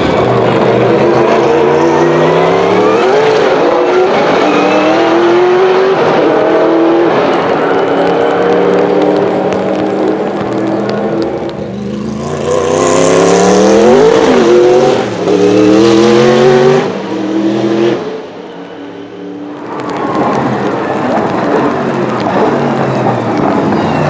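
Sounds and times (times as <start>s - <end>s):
racing car engine accelerating: 0.0s - 18.3s.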